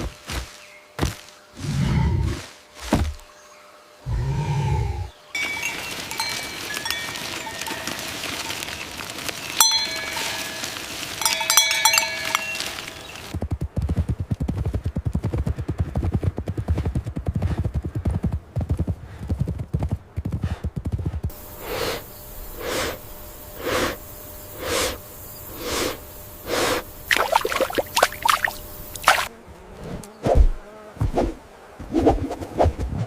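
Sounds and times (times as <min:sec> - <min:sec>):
horse hooves thudding: 0:05.4 - 0:29.3
horse heavy breathing: 0:17.3 - 0:18.0, 0:18.9 - 0:19.5, 0:20.2 - 0:27.3.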